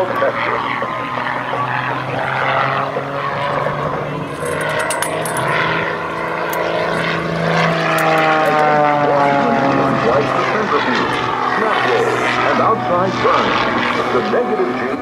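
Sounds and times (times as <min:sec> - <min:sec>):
propeller plane engine droning: 0:00.0 - 0:15.0.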